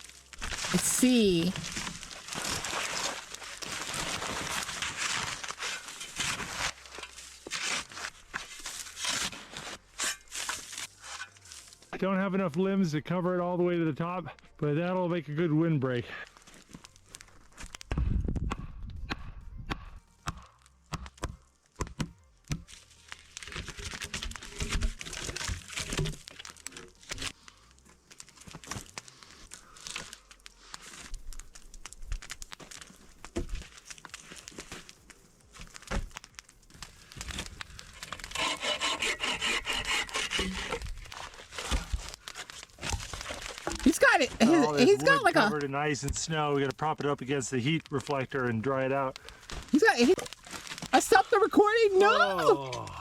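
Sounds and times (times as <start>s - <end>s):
rustling and scraping: 1.4s - 11.9s, 32.2s - 45.5s.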